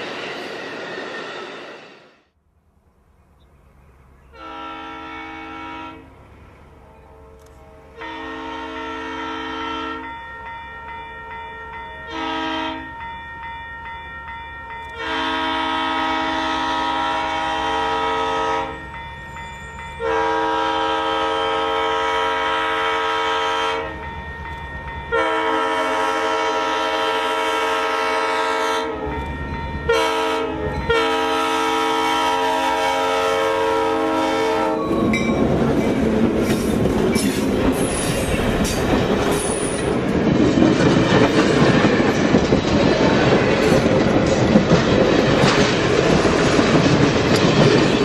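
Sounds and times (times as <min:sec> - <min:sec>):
low rumble of train: 0:00.0 - 0:48.0
locomotive air horn blasts: 0:04.3 - 0:06.1, 0:06.9 - 0:10.1, 0:12.1 - 0:12.9, 0:15.0 - 0:18.8, 0:20.0 - 0:24.0, 0:25.1 - 0:29.2, 0:29.9 - 0:35.1.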